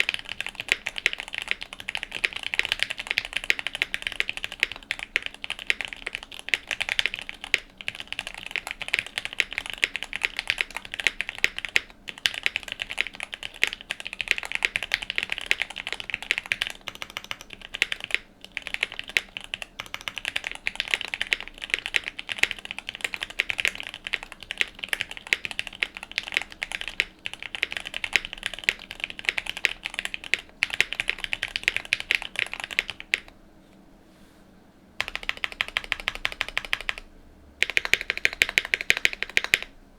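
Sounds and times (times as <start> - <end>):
fast mechanical keyboard typing: 0.0 - 33.3, 35.0 - 39.7.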